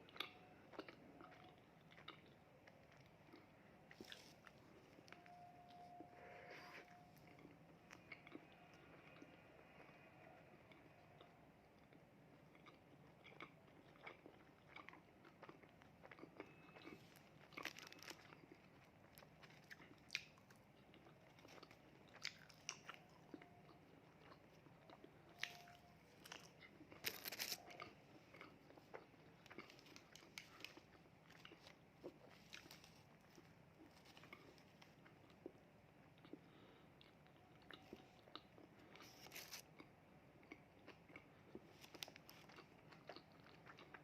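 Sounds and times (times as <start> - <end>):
person chewing food: 0.0 - 44.0
crisp crunches: 16.9 - 18.5, 25.4 - 28.0, 39.0 - 39.7.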